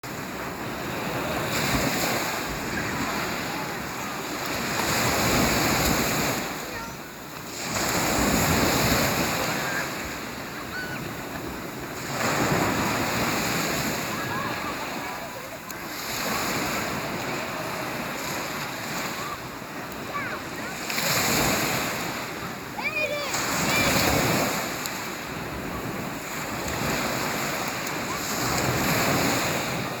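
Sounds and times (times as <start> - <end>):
sea waves washing on shore: 0.0 - 30.0.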